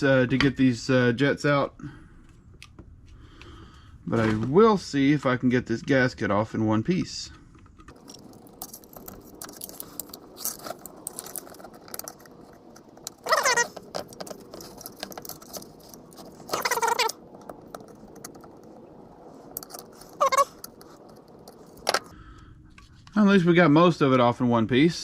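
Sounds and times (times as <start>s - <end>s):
gasket scratching and clicking: 7.9s - 22.1s
brief squeaks: 13.1s - 15.6s, 16.4s - 17.2s, 20.0s - 20.6s.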